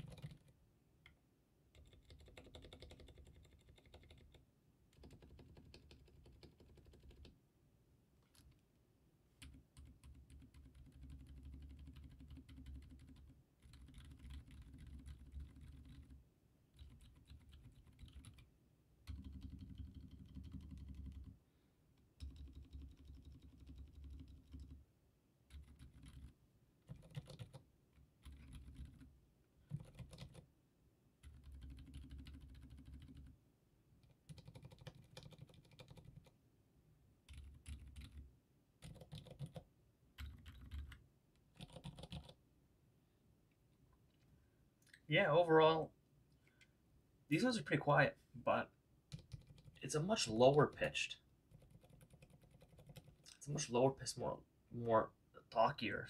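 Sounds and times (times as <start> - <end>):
quiet keyboard typing: 0.0 - 7.4, 9.4 - 21.4, 22.0 - 30.5, 31.2 - 33.4, 34.0 - 36.4, 37.2 - 42.4, 49.1 - 53.7.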